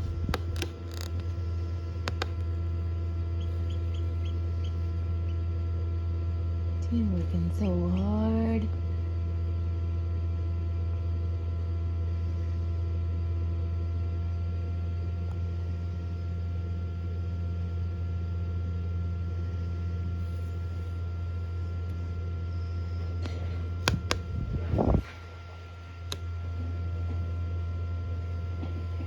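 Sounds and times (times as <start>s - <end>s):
sharp clicks: 0.0s - 1.3s, 2.0s - 2.6s, 23.8s - 24.2s
egg incubator humming: 0.0s - 29.0s
faint constant whine: 0.0s - 29.0s.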